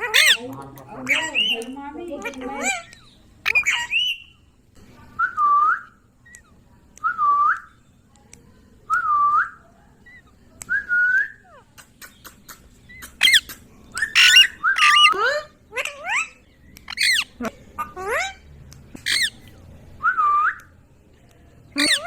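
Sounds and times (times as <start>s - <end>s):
parrot squawking: 0.0s - 4.4s, 12.9s - 18.4s, 19.0s - 19.4s, 21.8s - 22.0s
parrot whistling: 0.1s - 0.4s, 3.4s - 4.3s, 14.0s - 15.2s, 16.9s - 17.3s, 19.0s - 19.4s, 21.8s - 22.0s.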